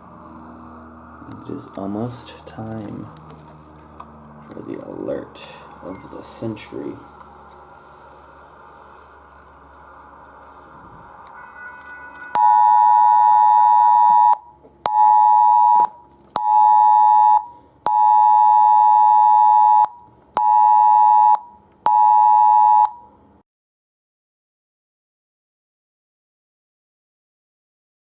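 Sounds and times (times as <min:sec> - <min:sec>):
emergency alert beeps: 0:11.3 - 0:23.1.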